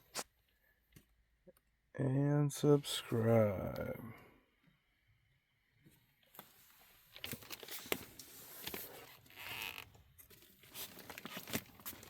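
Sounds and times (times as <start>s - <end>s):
rustling and crinkling: 5.9s - 12.0s.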